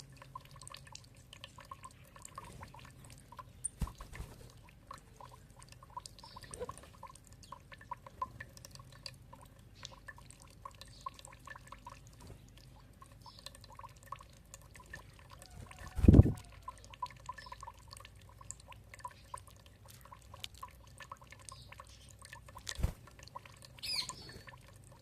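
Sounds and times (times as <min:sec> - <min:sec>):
water dripping and trickling: 0:00.0 - 0:25.0.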